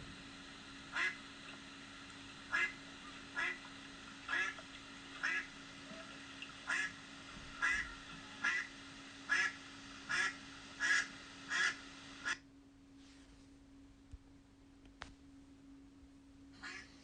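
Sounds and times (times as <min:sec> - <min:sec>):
duck quacking: 0:05.2 - 0:05.5, 0:06.7 - 0:06.9, 0:07.6 - 0:08.7, 0:09.3 - 0:12.4, 0:16.6 - 0:16.9.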